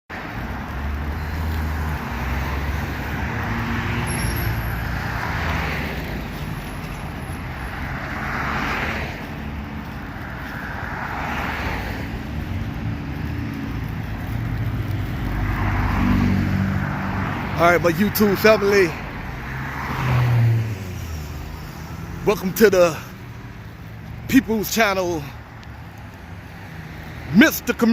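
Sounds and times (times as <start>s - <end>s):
cars passing: 0.1s - 27.9s.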